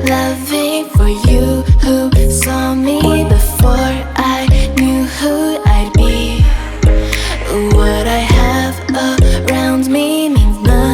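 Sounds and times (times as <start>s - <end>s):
background music with beat: 0.0s - 10.9s
deep bass drum hits: 7.7s - 8.6s.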